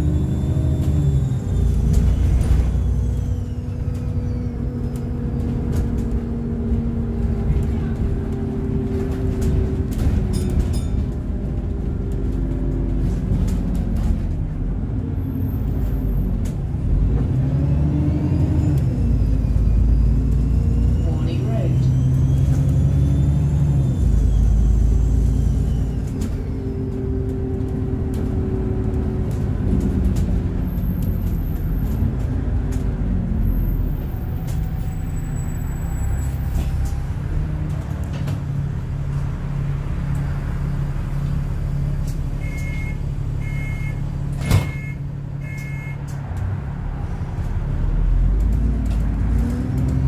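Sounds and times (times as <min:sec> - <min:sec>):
bus engine with turbo whistle: 0:00.0 - 0:50.0
short beeps: 0:42.4 - 0:46.0.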